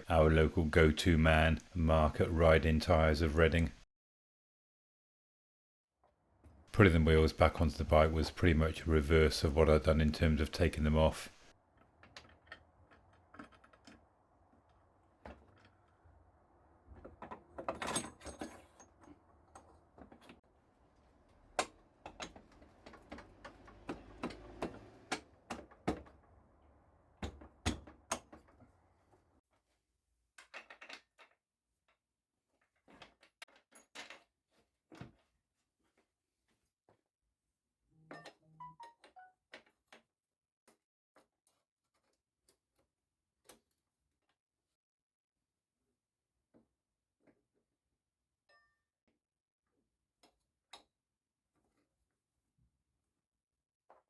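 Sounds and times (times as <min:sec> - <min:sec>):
hand tools clicking and knocking: 0:16.9 - 0:20.4, 0:21.3 - 0:26.4, 0:27.2 - 0:28.8.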